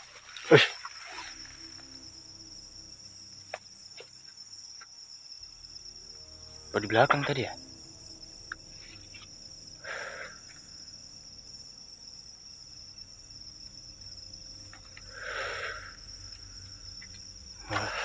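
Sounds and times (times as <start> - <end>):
crickets chirping: 0.0 - 18.0
short hissing: 15.1 - 16.0.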